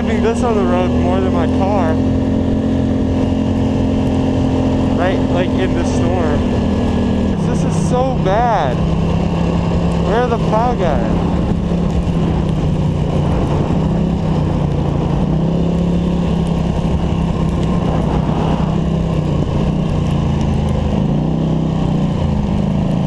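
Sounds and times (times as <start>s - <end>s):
atv engine running: 0.0s - 23.0s.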